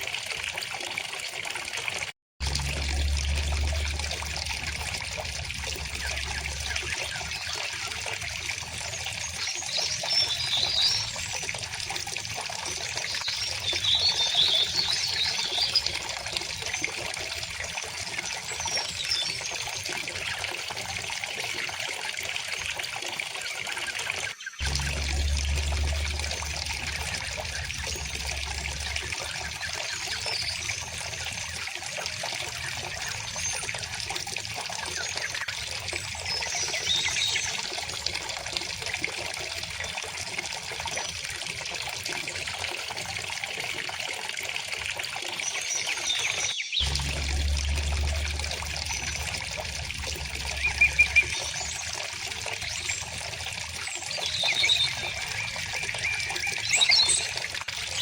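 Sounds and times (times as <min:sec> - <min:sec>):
river water flowing: 0:02.4 - 0:12.1, 0:24.6 - 0:34.5, 0:46.8 - 0:57.2
birds chirping: 0:24.5 - 0:31.6, 0:45.7 - 0:57.3.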